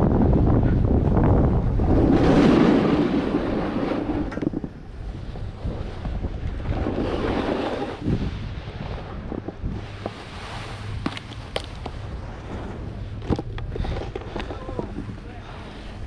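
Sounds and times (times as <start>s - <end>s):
wind buffeting microphone: 0.0s - 16.0s
skis hissing through powder snow: 6.9s - 8.1s.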